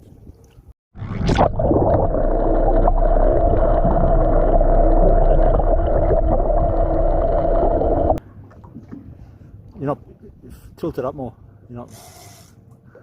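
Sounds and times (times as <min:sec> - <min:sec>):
churning water: 0:01.0 - 0:09.2.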